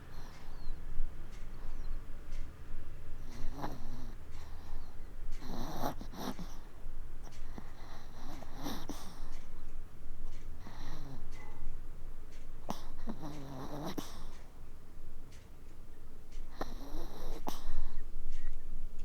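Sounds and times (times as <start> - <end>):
puppy snoring: 0.0 - 0.8, 3.2 - 9.7, 10.6 - 11.7, 12.6 - 14.6, 16.5 - 18.1.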